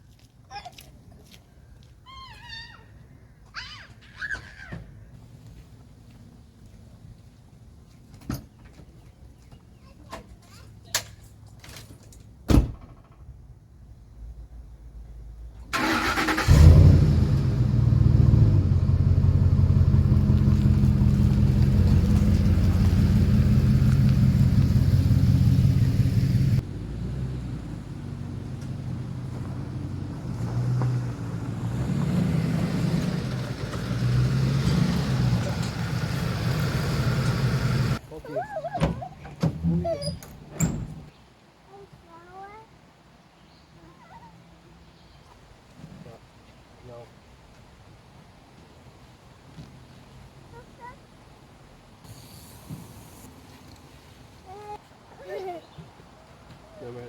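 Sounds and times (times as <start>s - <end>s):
car engine running: 16.5s - 26.9s, 31.3s - 38.0s.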